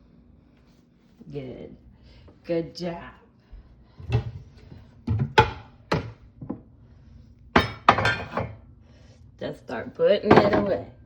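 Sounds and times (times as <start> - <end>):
dishes clattering: 7.6 - 8.6, 10.2 - 10.8.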